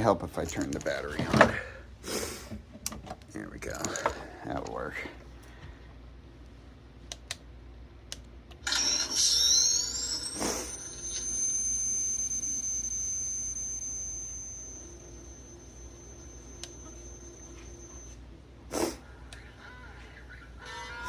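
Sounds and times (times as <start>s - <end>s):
rising electronic whine: 8.6s - 18.2s.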